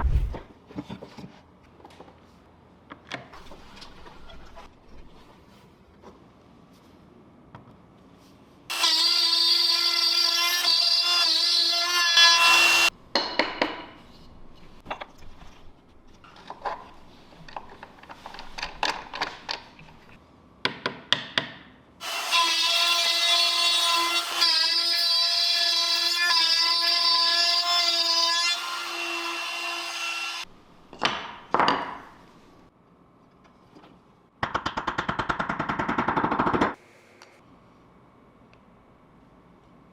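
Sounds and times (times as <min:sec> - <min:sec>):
power tool cutting wood: 0:08.7 - 0:12.9, 0:22.0 - 0:30.5.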